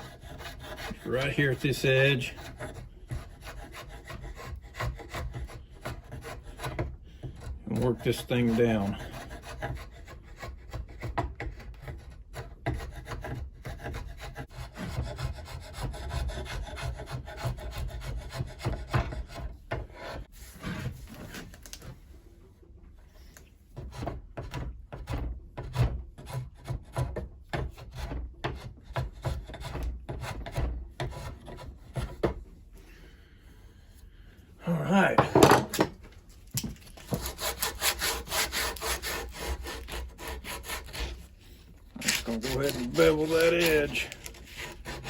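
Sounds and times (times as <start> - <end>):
hand tool scraping wood: 0.0 - 21.9, 23.7 - 33.2, 36.9 - 45.0.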